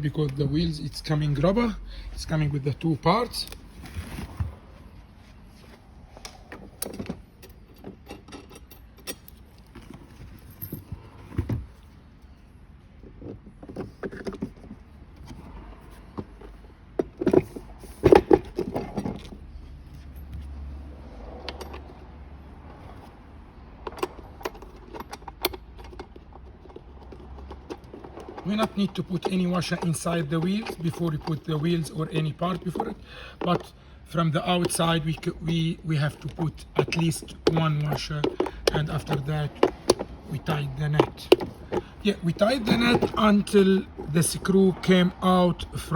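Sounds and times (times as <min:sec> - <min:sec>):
small metal parts clinking: 0:06.8 - 0:11.0, 0:23.8 - 0:44.2.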